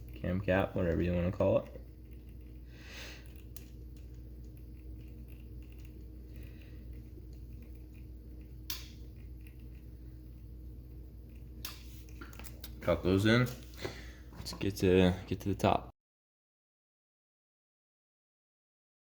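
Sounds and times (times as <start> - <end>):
steady low hum: 0.0 - 15.9
sharp click: 8.7 - 9.0.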